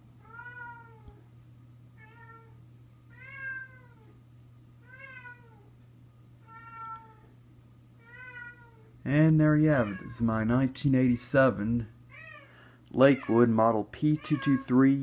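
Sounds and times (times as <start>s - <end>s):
steady low hum: 0.0s - 15.0s
cat meowing: 0.2s - 1.2s, 2.0s - 4.1s, 4.8s - 5.7s, 6.4s - 7.3s, 8.0s - 8.9s, 9.7s - 10.2s, 12.1s - 12.5s.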